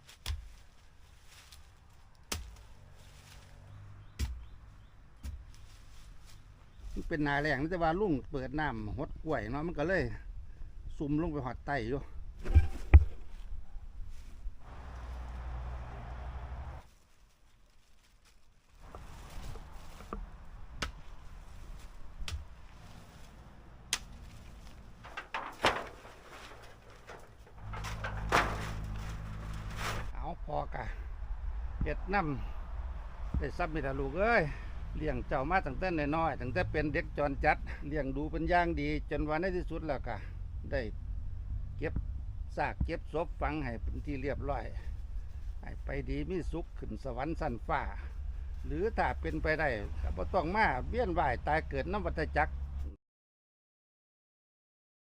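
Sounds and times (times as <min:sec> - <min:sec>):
digging tool striking soil: 0:00.0 - 0:00.7, 0:02.3 - 0:02.7, 0:04.1 - 0:04.6, 0:22.2 - 0:22.6, 0:23.9 - 0:24.8.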